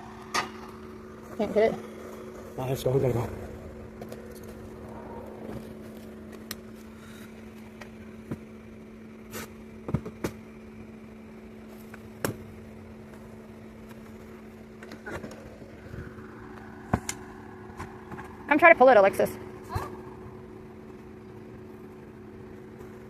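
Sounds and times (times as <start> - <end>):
steady mechanical hum: 0.0 - 23.0.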